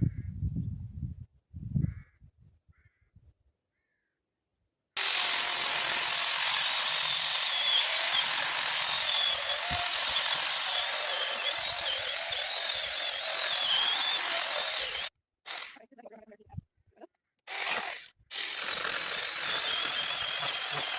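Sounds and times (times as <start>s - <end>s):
power cutting tool whining: 5.0s - 15.8s, 18.3s - 20.9s.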